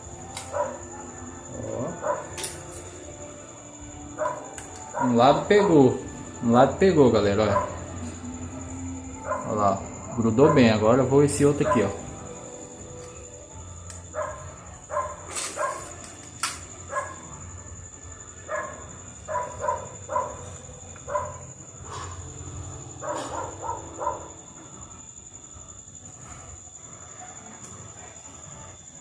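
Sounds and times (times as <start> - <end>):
dog barking: 0.5 - 1.3, 1.9 - 2.4, 4.2 - 5.2, 7.5 - 7.9, 9.2 - 9.6, 11.6 - 12.1, 14.1 - 16.0, 16.8 - 17.4, 18.4 - 22.2, 22.9 - 24.4.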